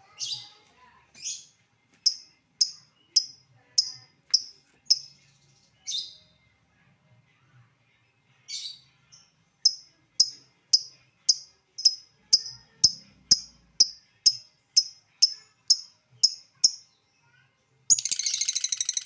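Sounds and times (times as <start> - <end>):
lovebird ticking chirps: 2.1 - 5.1, 9.7 - 16.8, 17.9 - 19.0.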